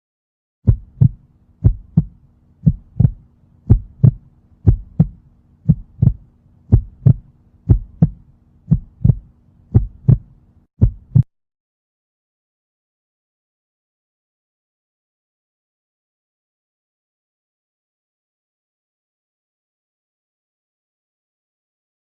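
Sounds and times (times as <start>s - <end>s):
human heartbeat: 0.7s - 11.3s.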